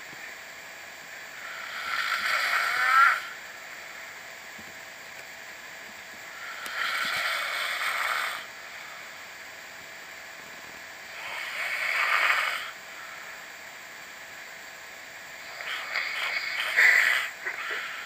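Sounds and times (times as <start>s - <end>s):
person snoring: 1.4s - 3.4s, 6.3s - 8.5s, 11.1s - 12.8s, 15.4s - 18.0s.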